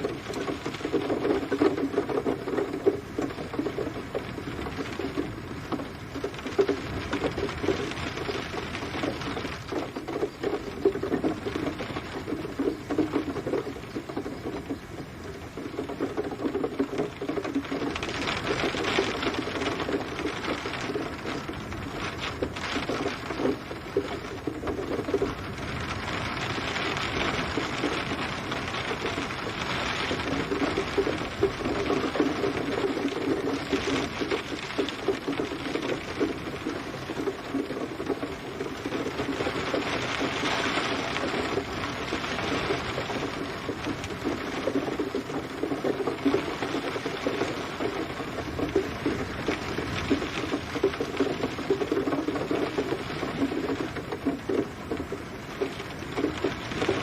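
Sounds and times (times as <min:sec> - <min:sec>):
rain pattering: 0:00.0 - 0:57.0.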